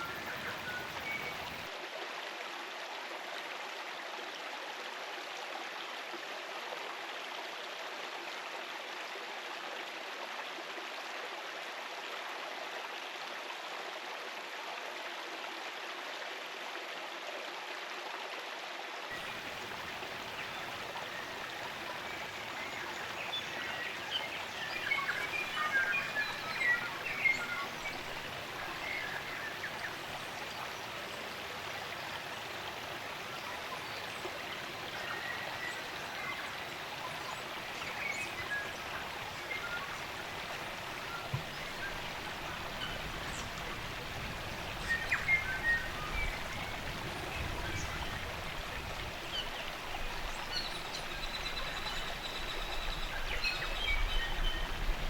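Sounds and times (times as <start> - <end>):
songbirds chirping: 0.0 - 1.7, 19.1 - 55.0
stream running over rocks: 0.0 - 55.0.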